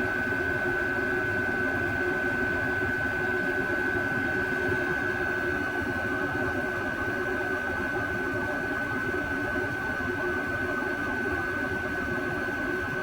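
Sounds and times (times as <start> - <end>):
air heater fans whirring: 0.0 - 7.4.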